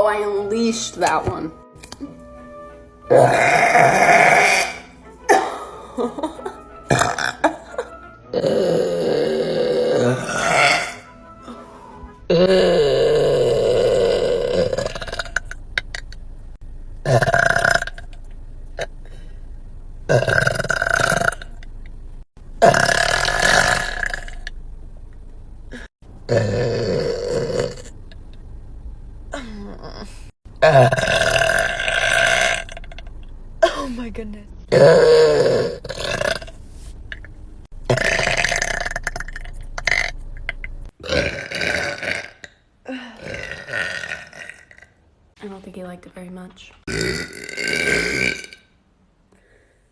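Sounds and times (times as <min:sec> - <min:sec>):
woman burping loudly: 0:03.1 - 0:11.1, 0:12.3 - 0:16.0, 0:22.6 - 0:24.5, 0:25.7 - 0:27.9, 0:29.4 - 0:33.0, 0:33.6 - 0:34.0, 0:34.7 - 0:36.5, 0:37.9 - 0:40.2, 0:41.0 - 0:45.0, 0:46.9 - 0:48.7.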